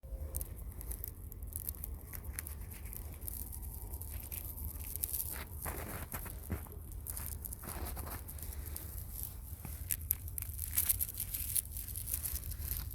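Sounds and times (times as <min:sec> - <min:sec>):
steady low rumble: 0:00.0 - 0:12.9
sharp crackles and rustles: 0:00.1 - 0:12.9.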